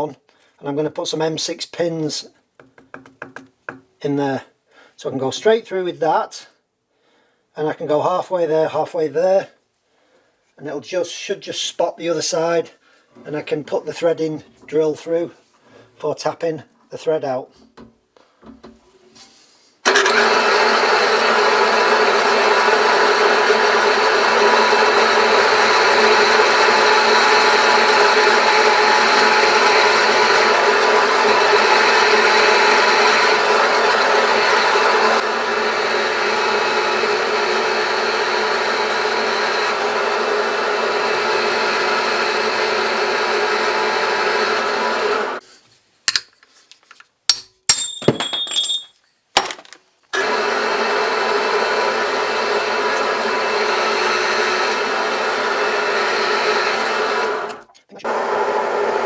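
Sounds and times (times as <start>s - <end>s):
electric drill drilling metal: 19.9s - 45.4s, 50.2s - 57.6s.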